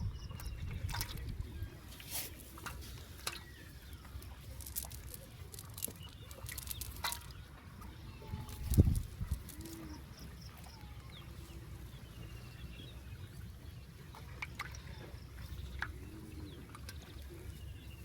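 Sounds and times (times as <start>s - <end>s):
water trickling and dripping: 0.0s - 11.0s
faint bird chirps: 3.3s - 13.3s.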